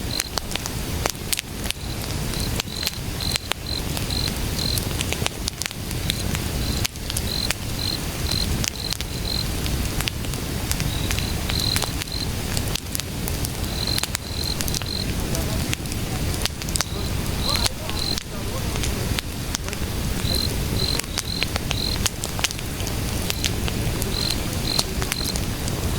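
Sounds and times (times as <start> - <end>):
firewood crackling and popping: 0.0 - 25.9
cricket chirping: 1.8 - 4.8, 6.1 - 9.5, 10.9 - 12.3, 13.6 - 15.2, 16.8 - 18.2, 20.2 - 22.1, 24.1 - 25.4
low rushing rumble: 14.2 - 25.9.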